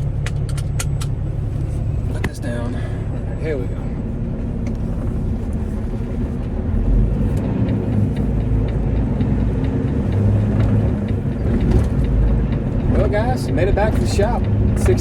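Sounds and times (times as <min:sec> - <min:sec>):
diesel truck engine running: 0:00.0 - 0:15.0
man talking: 0:02.1 - 0:04.0, 0:12.9 - 0:15.0.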